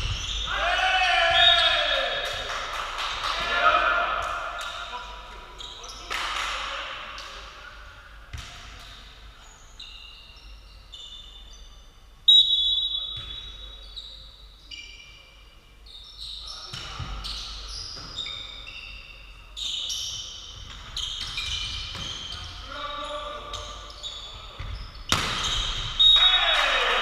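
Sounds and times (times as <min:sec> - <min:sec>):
shoes squeaking on court floor: 0:00.0 - 0:00.5, 0:04.5 - 0:06.2, 0:08.3 - 0:11.8, 0:13.0 - 0:26.0.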